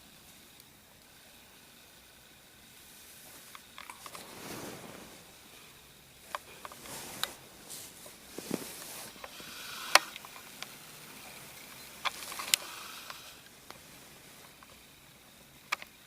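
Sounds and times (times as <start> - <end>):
soft rustling: 2.9 - 15.0.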